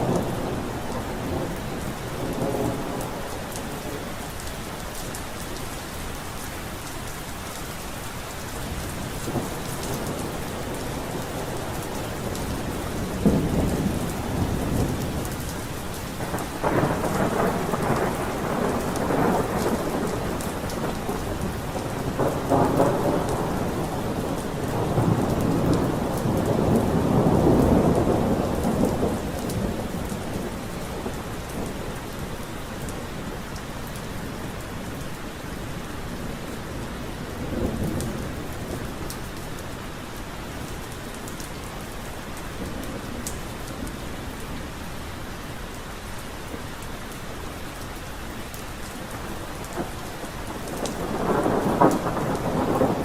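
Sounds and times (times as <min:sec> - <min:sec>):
steady rain: 0:00.0 - 0:53.0
thunder cracking and rumbling: 0:08.8 - 0:33.4, 0:48.9 - 0:53.0.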